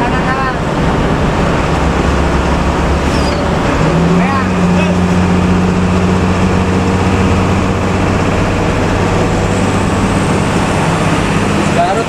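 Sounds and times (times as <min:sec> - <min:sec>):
bus engine droning: 0:00.0 - 0:12.0
road and tyre noise: 0:00.0 - 0:12.0.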